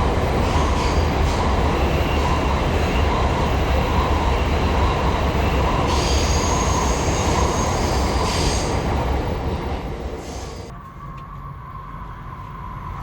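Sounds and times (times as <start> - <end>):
train rumbling past: 0.0 - 13.0
high wheel squeal: 0.4 - 8.8.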